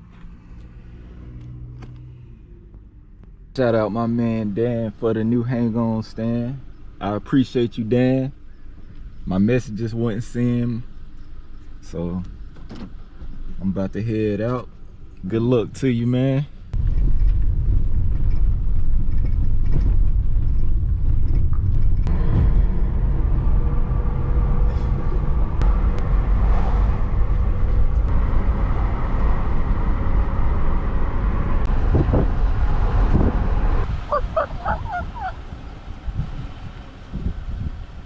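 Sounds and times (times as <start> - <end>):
vehicle engine and road noise: 0.0 - 38.0
high chirping tones: 34.1 - 35.4.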